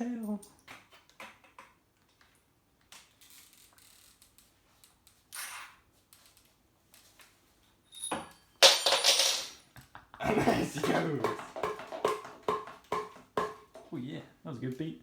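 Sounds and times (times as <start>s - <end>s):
metallic clink with ring: 7.8s - 9.6s.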